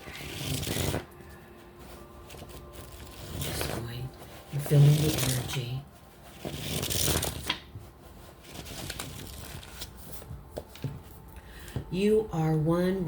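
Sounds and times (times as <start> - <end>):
cards shuffling: 0.0 - 1.2, 6.3 - 11.0.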